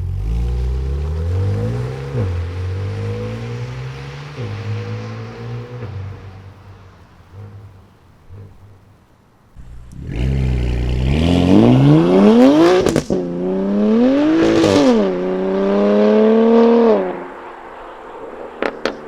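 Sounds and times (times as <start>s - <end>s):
car engine accelerating hard: 0.0s - 8.8s, 9.6s - 19.0s
exhaust crack at upshift: 9.6s - 17.3s, 18.1s - 19.0s.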